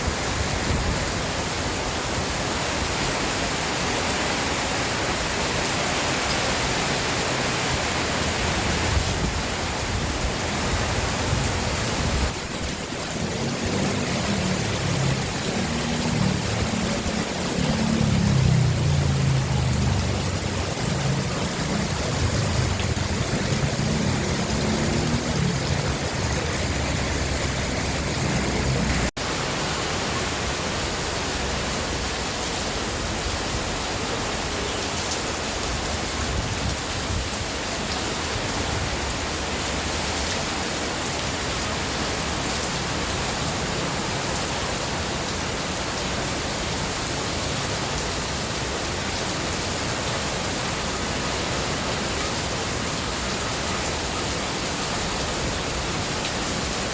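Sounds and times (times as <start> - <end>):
heavy rain hiss: 0.0 - 56.9
low rumble of wind: 6.2 - 34.2.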